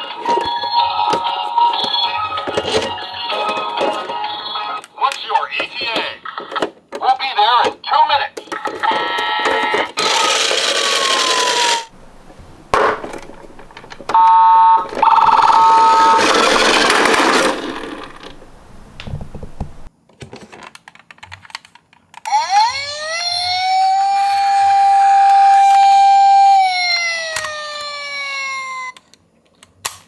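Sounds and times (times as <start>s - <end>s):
siren wailing: 12.7s - 17.8s, 22.3s - 29.0s.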